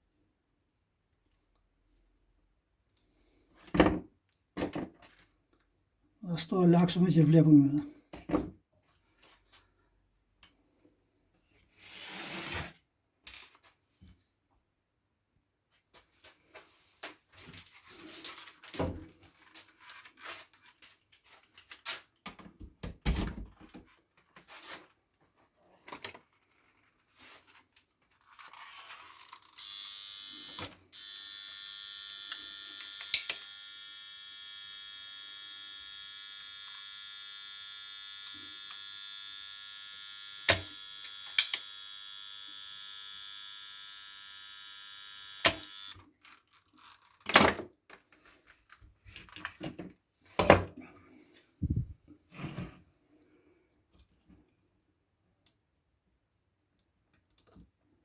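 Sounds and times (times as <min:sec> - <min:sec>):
small electric tool motor running: 0:29.5 - 0:46.0
sharp clicks: 0:32.2 - 0:33.6, 0:40.3 - 0:43.6, 0:45.3 - 0:46.0.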